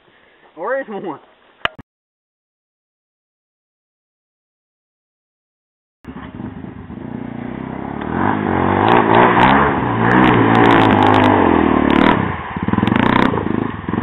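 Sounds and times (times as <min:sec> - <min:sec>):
atv engine revving: 0:06.1 - 0:14.0.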